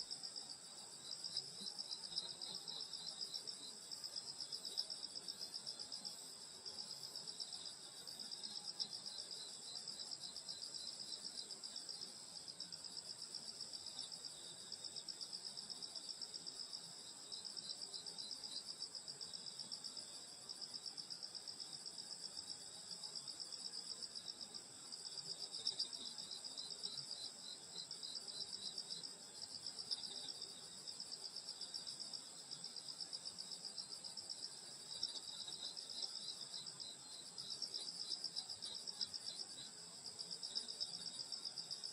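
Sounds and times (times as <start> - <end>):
crickets chirping: 0.0 - 41.9.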